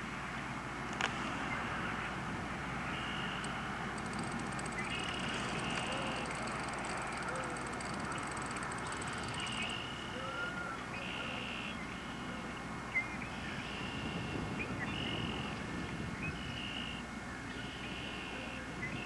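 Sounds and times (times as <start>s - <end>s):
high repeated calls: 4.0s - 10.2s.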